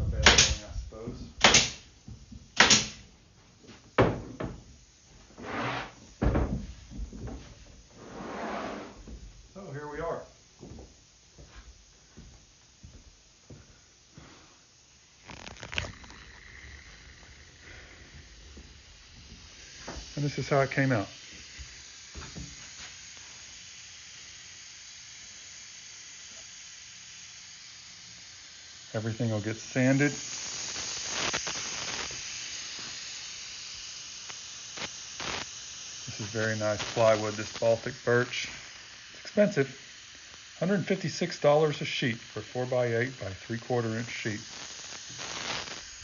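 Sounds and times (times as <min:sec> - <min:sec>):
faint steady hiss: 0:00.0 - 0:46.0
wooden box scraping slide: 0:05.4 - 0:06.0, 0:08.0 - 0:09.0.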